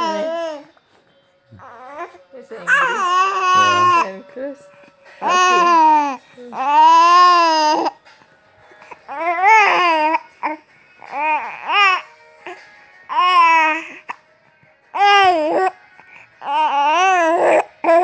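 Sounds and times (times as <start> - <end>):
baby babbling and cooing: 0.0 - 0.7, 1.6 - 4.1, 5.2 - 8.0, 8.9 - 14.1, 15.0 - 15.8, 16.4 - 18.0.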